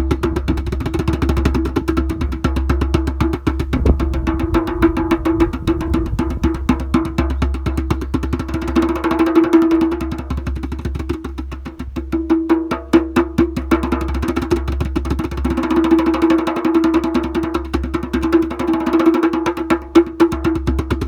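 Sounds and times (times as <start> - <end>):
percussion struck rapidly: 0.0 - 21.0.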